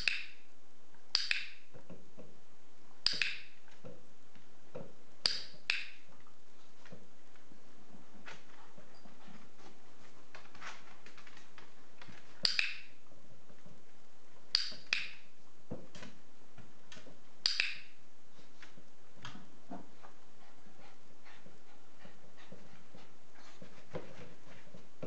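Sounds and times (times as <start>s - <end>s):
sharp clicks with bright ring: 14.6s - 15.2s.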